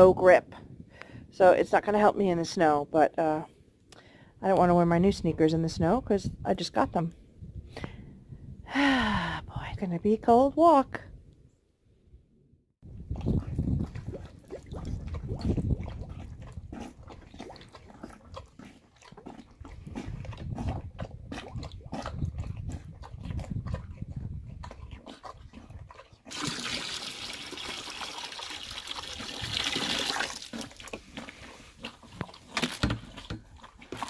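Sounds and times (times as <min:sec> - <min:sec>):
water pouring and splashing: 0:13.1 - 0:34.0.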